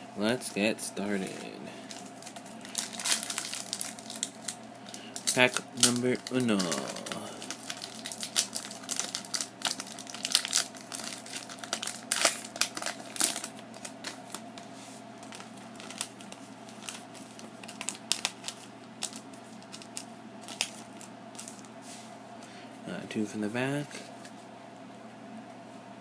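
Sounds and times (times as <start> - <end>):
cards rustling and clicking: 1.2 - 21.7
foil wrapper crinkling and tearing: 1.8 - 14.6, 15.2 - 21.7.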